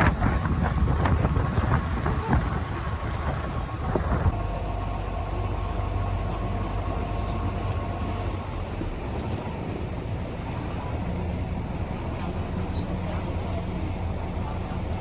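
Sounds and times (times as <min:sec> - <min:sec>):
wind on microphone: 0:00.0 - 0:04.4
boat engine rumbling: 0:00.0 - 0:15.0.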